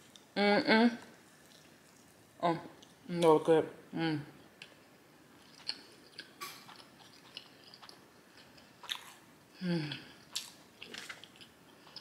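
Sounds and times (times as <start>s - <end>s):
person chewing food: 1.3s - 2.2s, 4.5s - 12.0s.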